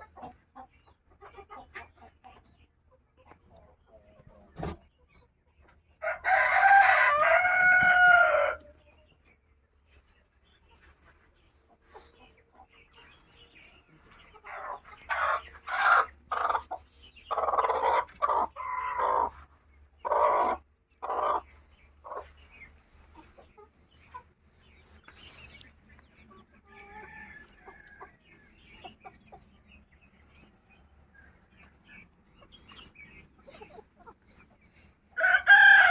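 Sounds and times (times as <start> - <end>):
chickens clucking: 0.0 - 35.9
rooster crowing: 6.0 - 8.6, 35.2 - 35.9.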